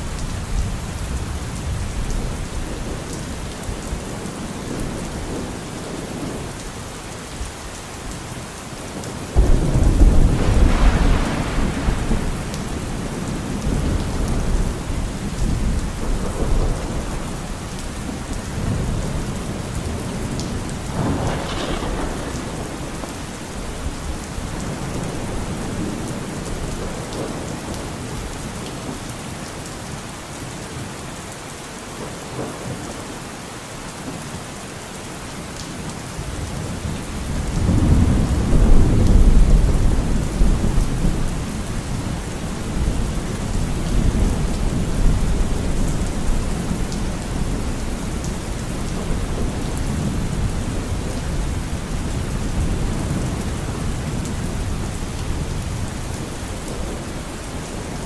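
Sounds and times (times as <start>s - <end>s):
steady rain: 0.0s - 58.0s
thunder rumbling: 9.0s - 27.8s, 37.1s - 58.0s.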